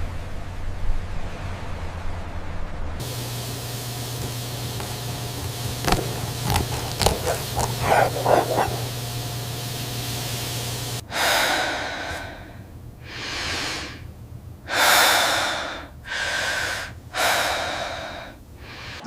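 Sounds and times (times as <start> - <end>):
steady low hum: 0.0 - 19.0
person breathing heavily: 4.0 - 9.0, 11.0 - 14.1, 14.7 - 19.0.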